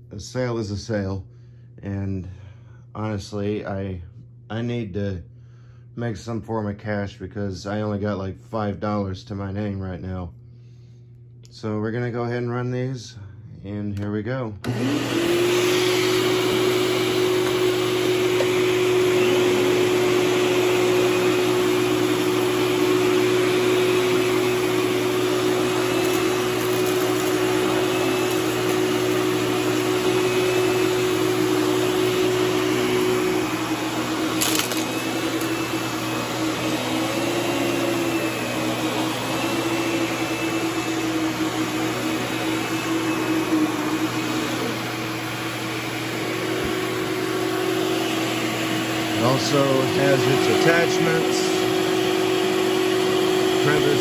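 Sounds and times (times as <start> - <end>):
vacuum cleaner running: 14.6 - 54.0.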